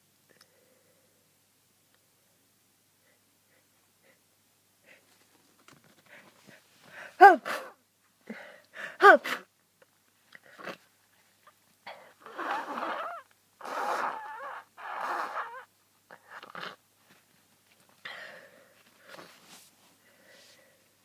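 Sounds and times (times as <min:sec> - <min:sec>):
short quiet breaths: 0:05.9 - 0:07.6, 0:18.0 - 0:21.0
person sneezing: 0:07.1 - 0:08.4, 0:09.0 - 0:09.5.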